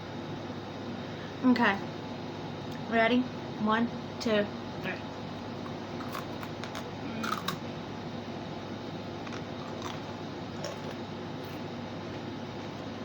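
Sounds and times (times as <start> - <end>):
crunchy snack being chewed: 6.0 - 7.6, 9.2 - 11.6.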